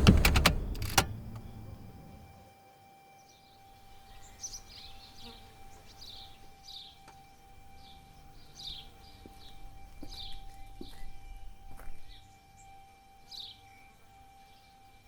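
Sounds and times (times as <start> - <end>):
birds chirping: 3.2 - 15.0.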